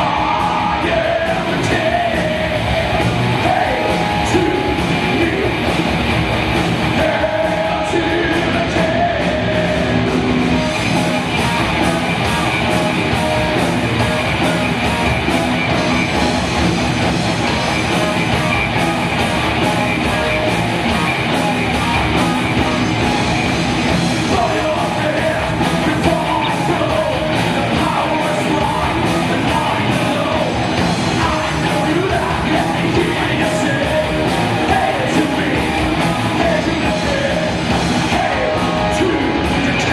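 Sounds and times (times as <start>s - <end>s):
person singing: 0.0s - 5.7s, 6.9s - 15.2s, 24.3s - 39.9s
heavy metal band playing: 0.0s - 39.9s.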